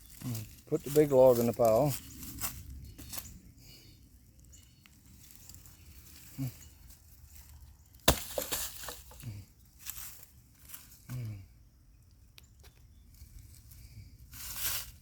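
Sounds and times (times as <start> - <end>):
twigs crackling and rustling: 0.0 - 11.1, 12.3 - 15.0
log thudding onto brush: 8.0 - 9.2.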